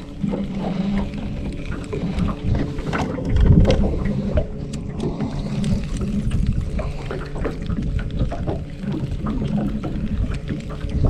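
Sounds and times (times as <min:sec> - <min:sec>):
electric motor humming: 0:00.0 - 0:11.0.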